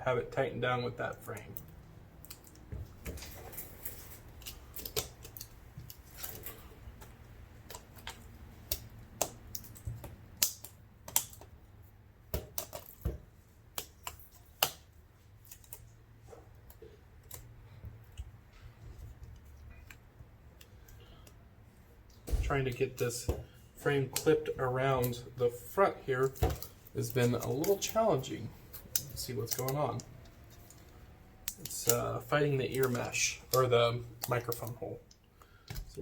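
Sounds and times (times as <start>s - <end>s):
plastic clicks and snaps: 7.0s - 11.6s, 26.2s - 36.0s.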